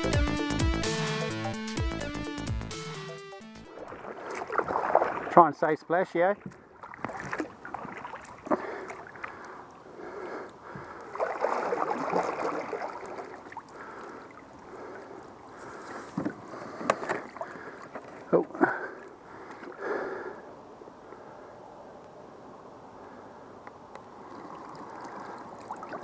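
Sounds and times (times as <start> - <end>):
water splashing and sloshing: 3.7 - 5.6, 6.2 - 19.9, 23.7 - 26.0.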